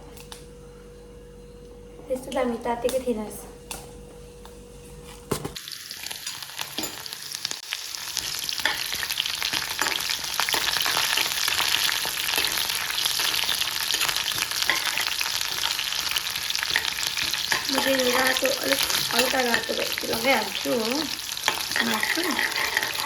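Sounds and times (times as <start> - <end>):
food sizzling in hot oil: 5.6 - 23.0.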